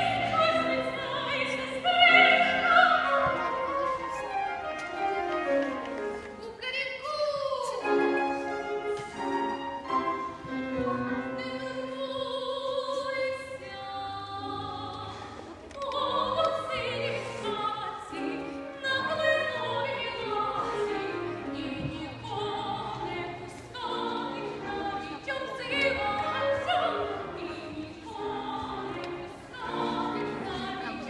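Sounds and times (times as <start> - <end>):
instrumental accompaniment: 0.0 - 6.7, 7.6 - 12.5
operatic singing: 0.0 - 31.0.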